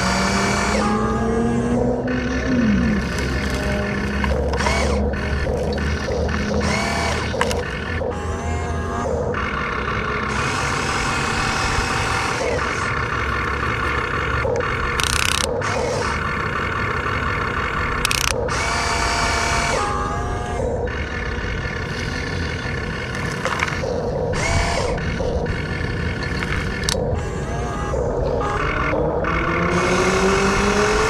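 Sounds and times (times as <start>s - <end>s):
small electric motors whining: 0.0s - 31.0s.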